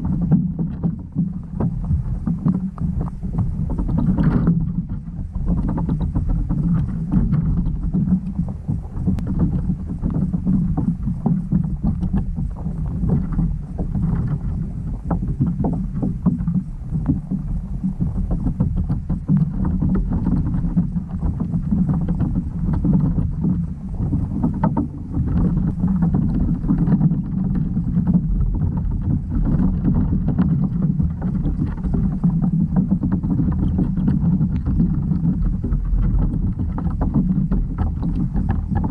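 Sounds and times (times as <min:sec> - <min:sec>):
small clicks and crackles: 0:00.0 - 0:38.9
underwater low rumble: 0:00.0 - 0:38.9.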